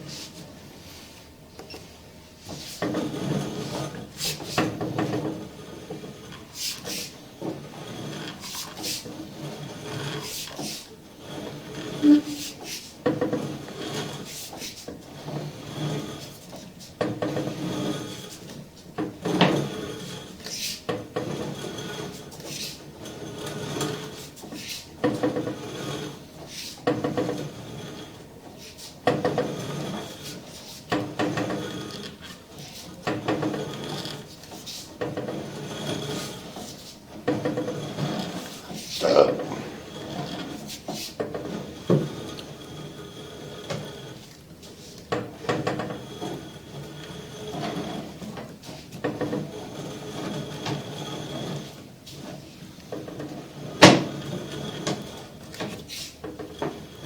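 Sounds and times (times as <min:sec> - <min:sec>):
camera scraping inside drain pipe: 0:02.5 - 0:12.8, 0:33.2 - 0:44.2.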